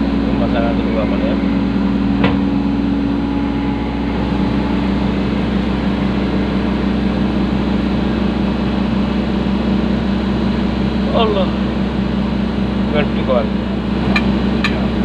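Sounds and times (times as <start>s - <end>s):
diesel engine humming: 0.0s - 15.0s.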